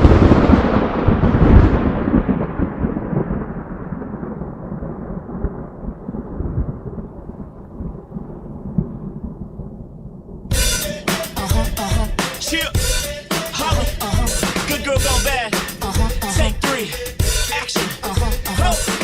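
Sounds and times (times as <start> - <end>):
thunderclap rumbling: 0.0 - 10.6, 13.4 - 19.0.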